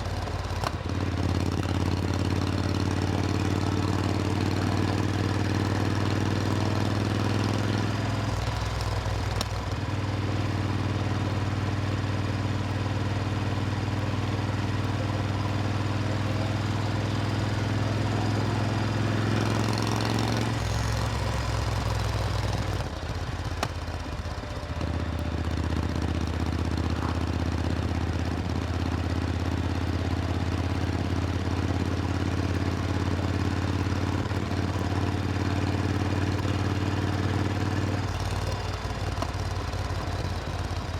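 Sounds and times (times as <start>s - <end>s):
motorcycle engine running: 0.0s - 40.9s.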